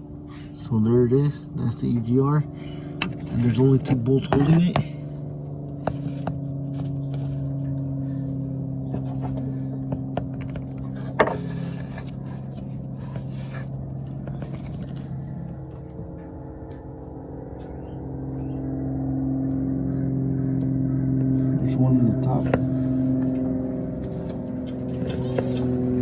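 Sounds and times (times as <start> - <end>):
engine humming: 0.0 - 26.0
light clicks and scrapes: 24.0 - 26.0.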